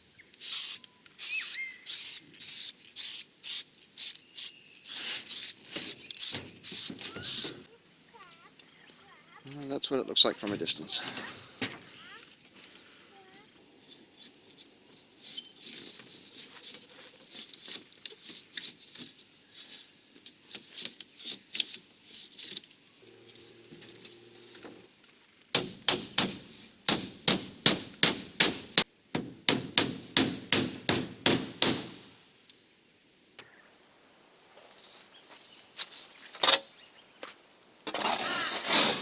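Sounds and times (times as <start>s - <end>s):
light clicks and scratches: 0.4s - 7.7s
hammer strikes: 25.6s - 32.1s.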